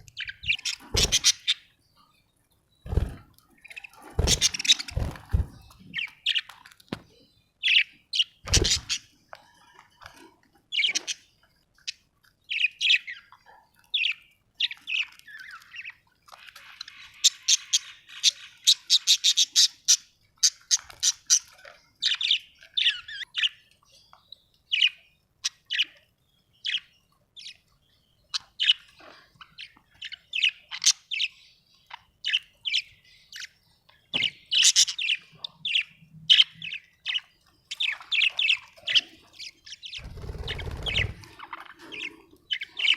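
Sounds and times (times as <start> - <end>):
budgerigars chattering: 0.0 - 1.7, 4.2 - 6.4, 37.8 - 42.9.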